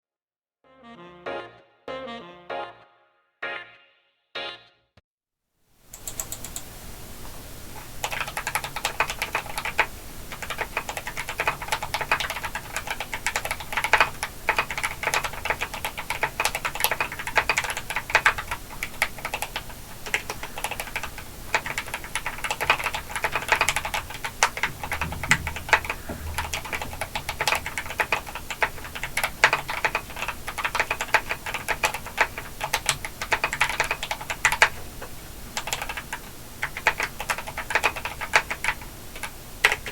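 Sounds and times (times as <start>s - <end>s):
fast typing on mechanical keyboard: 5.9s - 6.6s, 8.0s - 34.8s, 35.6s - 39.9s.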